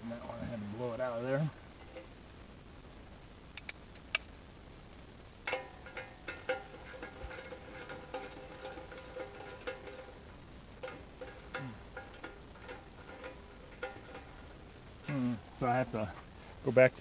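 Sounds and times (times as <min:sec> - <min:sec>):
light metal clicks and taps: 0:04.9 - 0:10.2, 0:10.8 - 0:15.2
lingering metallic ringing: 0:05.4 - 0:16.2.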